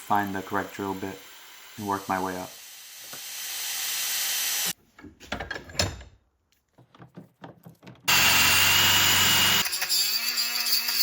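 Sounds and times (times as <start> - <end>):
power tool high whine: 0.0 - 4.8, 8.1 - 11.0
power tool whirring: 0.0 - 4.8, 8.1 - 11.0.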